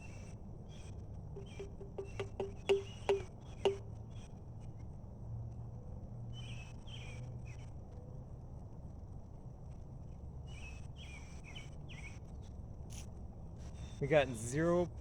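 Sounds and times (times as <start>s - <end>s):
insects chirping: 1.4s - 3.8s
water drops plinking into tube: 1.4s - 3.8s.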